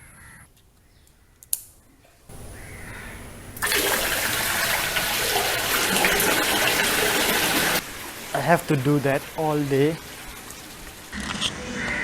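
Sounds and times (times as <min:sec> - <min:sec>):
water fountain rushing: 0:03.4 - 0:11.2.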